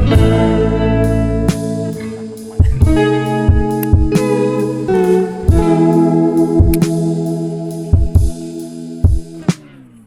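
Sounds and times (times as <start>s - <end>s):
instrumental music: 0.0s - 10.0s
low drum hits: 2.6s - 4.4s.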